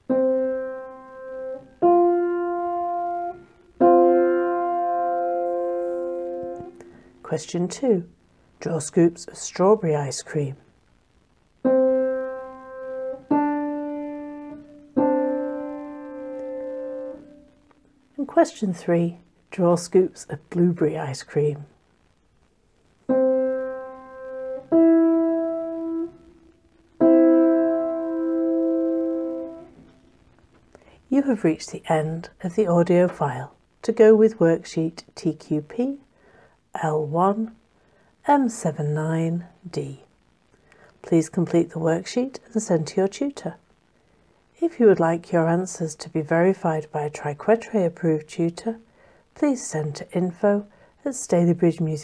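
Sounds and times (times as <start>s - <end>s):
piano notes: 0.0s - 6.9s, 11.6s - 17.6s, 23.1s - 26.3s, 27.0s - 29.9s.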